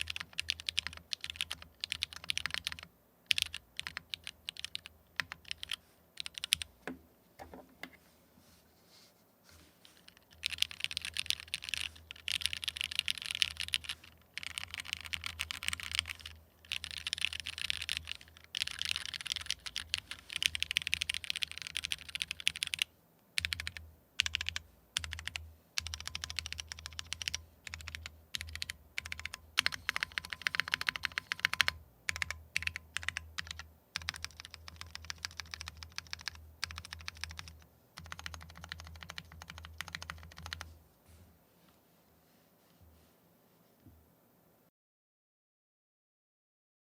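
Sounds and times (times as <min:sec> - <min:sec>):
mechanical keyboard typing: 0:00.0 - 0:06.7, 0:10.0 - 0:40.7.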